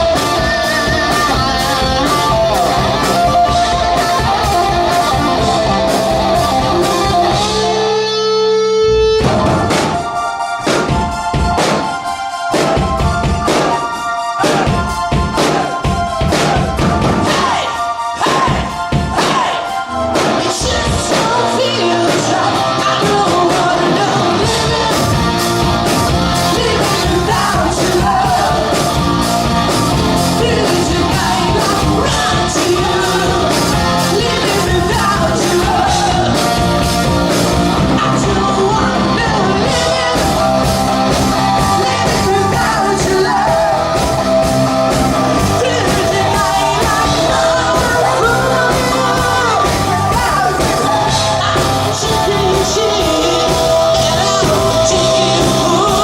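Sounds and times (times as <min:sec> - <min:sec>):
rock music with vocals: 0:00.0 - 0:56.0
steady drum beat: 0:09.2 - 0:17.6, 0:22.1 - 0:56.0.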